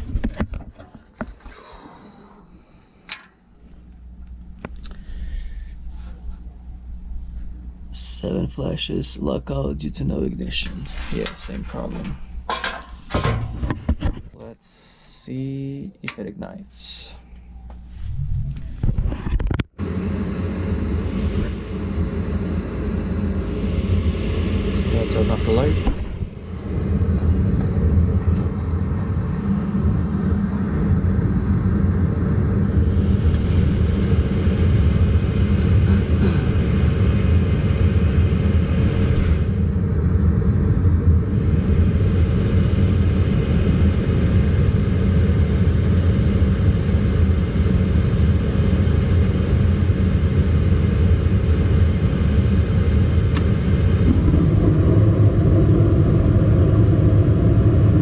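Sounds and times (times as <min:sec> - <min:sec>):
furnace motor rumbling: 0:00.0 - 0:58.0.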